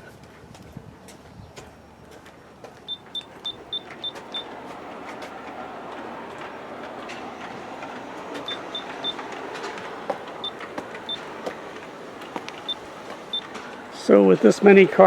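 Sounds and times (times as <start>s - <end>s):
short high-pitched beeps: 2.9s - 4.5s, 8.5s - 9.2s
model train motors rumbling: 3.1s - 15.0s.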